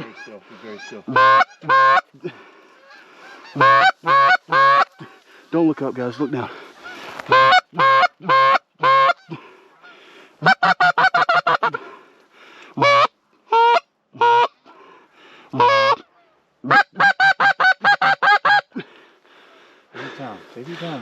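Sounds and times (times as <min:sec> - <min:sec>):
goose call honks and clucks: 0:00.0 - 0:05.2, 0:06.0 - 0:11.9, 0:12.8 - 0:14.8, 0:15.5 - 0:18.8.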